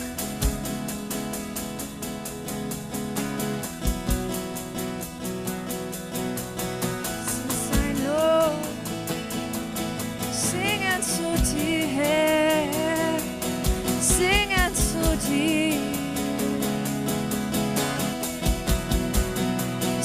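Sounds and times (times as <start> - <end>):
gliding lead melody: 0.0 - 14.0
steady hi-hat beat: 0.0 - 20.0
sustained guitar chords: 0.0 - 20.0.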